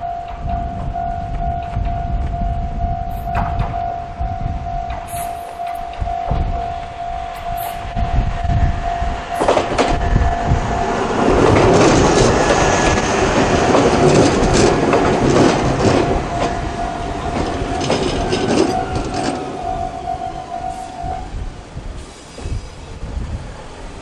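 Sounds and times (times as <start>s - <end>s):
crossing warning bell ringing: 0.0s - 21.4s
wind buffeting microphone: 0.0s - 24.0s
train wheels clacking over rail joints: 9.3s - 10.2s, 10.8s - 19.8s.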